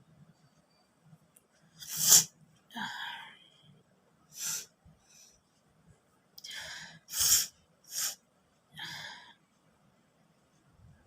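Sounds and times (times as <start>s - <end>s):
person sniffing and breathing: 1.8s - 2.3s, 4.3s - 5.4s, 6.5s - 8.2s.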